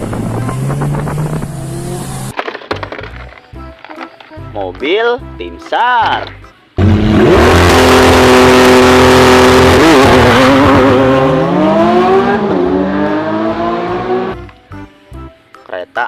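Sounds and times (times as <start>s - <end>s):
car engine revving: 0.0s - 2.3s, 6.8s - 14.4s.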